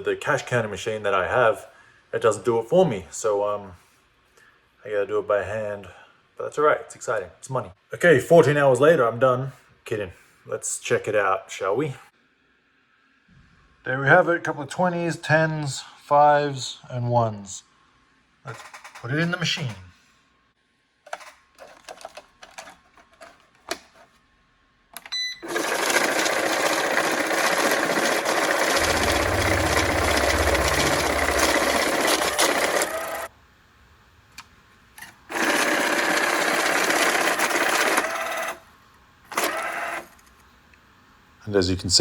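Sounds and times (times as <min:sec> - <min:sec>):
cash counting machine whirring: 0:25.4 - 0:33.3, 0:35.3 - 0:38.6, 0:39.3 - 0:40.3.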